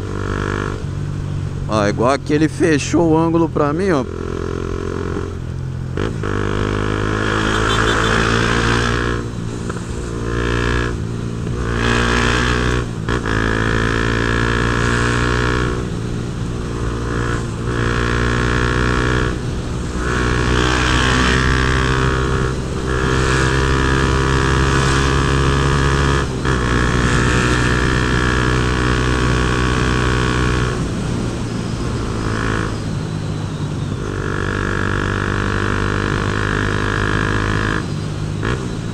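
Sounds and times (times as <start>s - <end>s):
motorcycle engine accelerating: 0.0s - 1.3s, 3.7s - 38.9s.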